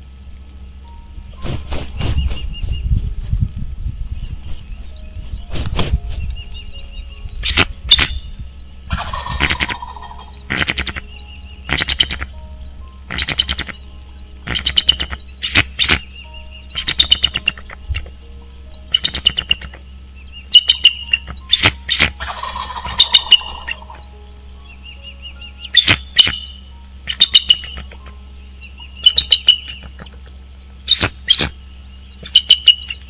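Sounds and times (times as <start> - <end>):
eagle high-pitched chattering: 8.9 - 12.3, 13.0 - 13.8, 14.4 - 16.1, 16.7 - 18.1, 18.8 - 19.9, 20.5 - 24.0, 25.6 - 28.1, 28.8 - 33.0.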